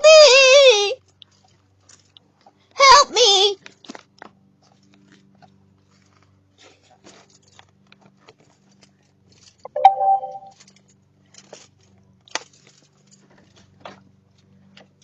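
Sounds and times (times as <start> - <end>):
doorbell chime: 9.7 - 10.5.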